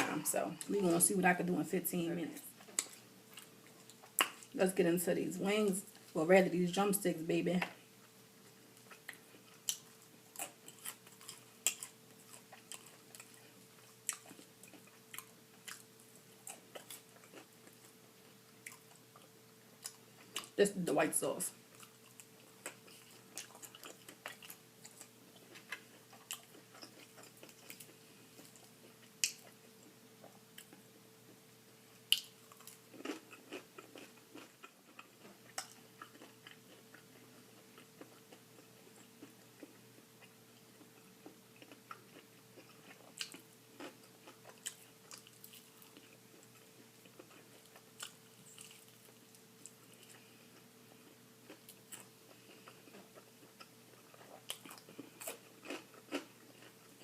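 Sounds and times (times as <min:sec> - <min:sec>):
crunching fried chicken: 0:08.7 - 0:18.0, 0:21.7 - 0:29.6, 0:32.0 - 0:50.2, 0:51.0 - 0:57.0.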